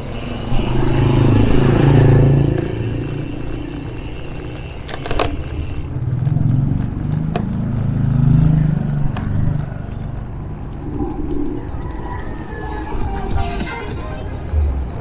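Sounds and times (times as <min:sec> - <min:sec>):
rolling tyre noise: 0:00.0 - 0:15.0
wind rumble on microphone: 0:05.6 - 0:15.0.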